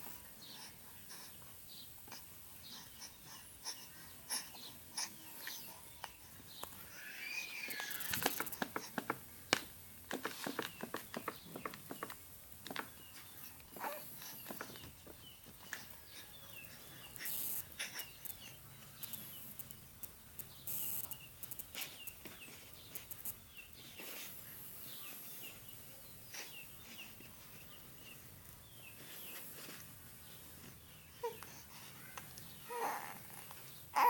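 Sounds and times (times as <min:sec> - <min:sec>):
bird chirping: 0:10.2 - 0:34.0.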